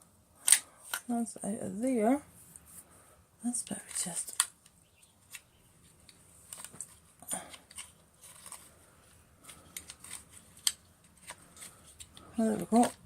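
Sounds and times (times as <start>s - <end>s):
clicks and scratches on plastic brush: 3.6s - 13.0s.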